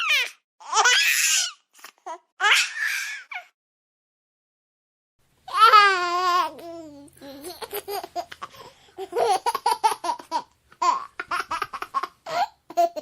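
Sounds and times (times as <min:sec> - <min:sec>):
baby giggling: 0:05.5 - 0:13.0.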